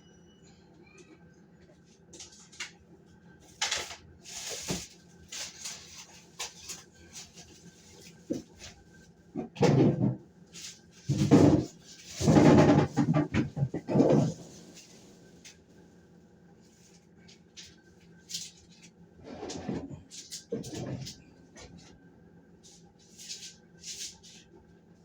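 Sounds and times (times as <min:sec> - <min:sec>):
groceries rustling and knocking: 0:03.6 - 0:15.6.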